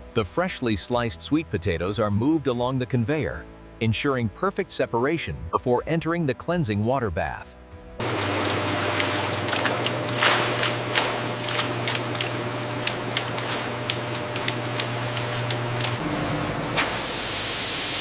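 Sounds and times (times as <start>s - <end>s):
conveyor machine hum: 8.0s - 18.0s.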